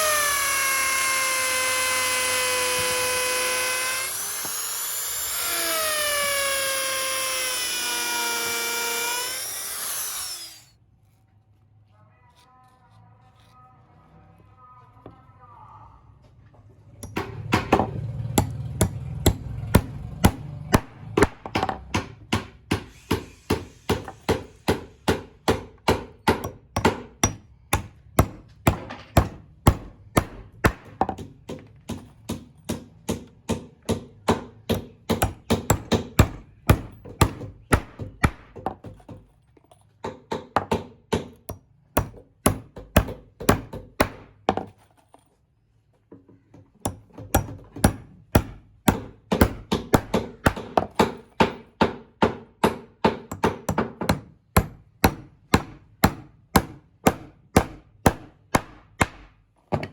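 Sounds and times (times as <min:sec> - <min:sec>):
hammering on wood: 0:17.0 - 0:39.2, 0:40.0 - 0:44.6, 0:46.8 - 0:59.9.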